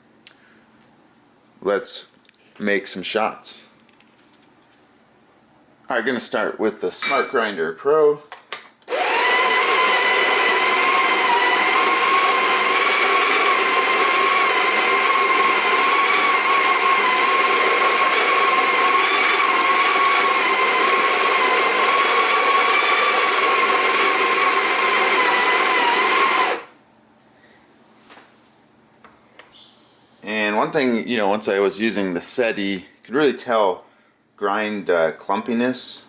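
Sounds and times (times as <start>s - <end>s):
coffee grinder motor whine: 8.9s - 26.7s.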